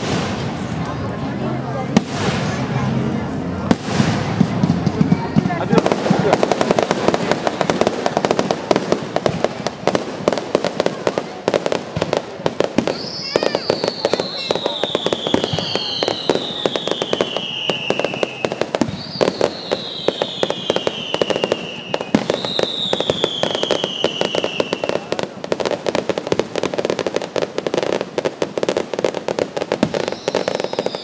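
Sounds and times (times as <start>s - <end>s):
fireworks pops and crackles: 0.0s - 31.0s
falling firework whistle: 12.8s - 25.1s, 29.8s - 31.0s.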